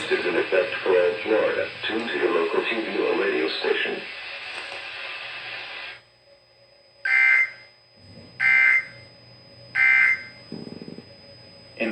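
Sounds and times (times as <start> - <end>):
harsh two-tone digital data bursts: 7.0 - 7.8, 8.4 - 9.0, 9.7 - 10.4.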